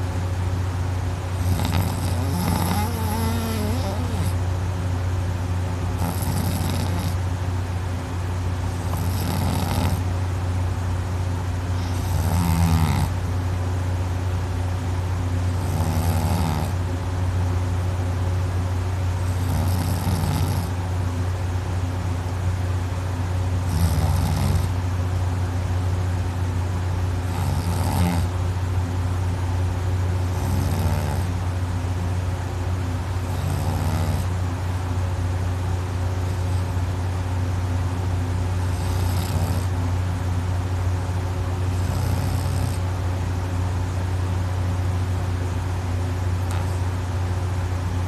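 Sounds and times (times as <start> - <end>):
steady low hum: 0.0 - 48.0
heavy snoring: 1.3 - 4.4, 6.0 - 7.2, 8.7 - 10.1, 11.8 - 13.2, 15.5 - 16.8, 19.2 - 20.8, 23.6 - 24.8, 27.2 - 28.4, 30.2 - 31.4, 33.2 - 34.4, 38.6 - 39.8, 41.7 - 42.8, 46.4 - 46.8.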